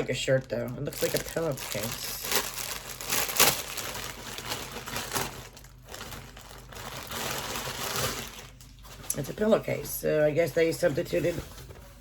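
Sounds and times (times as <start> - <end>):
sharp packaging crackle: 0.0 - 9.3
packaging and fabric rustling: 0.0 - 9.8.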